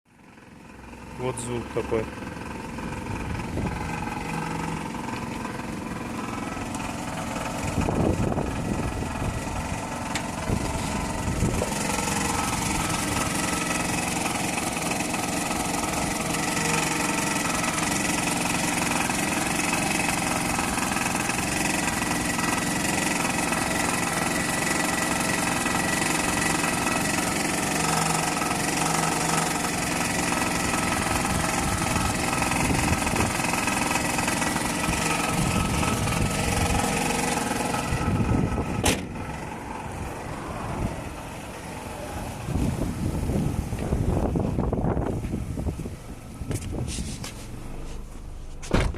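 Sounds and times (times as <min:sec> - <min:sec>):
car engine running with knock: 0:00.1 - 0:48.9.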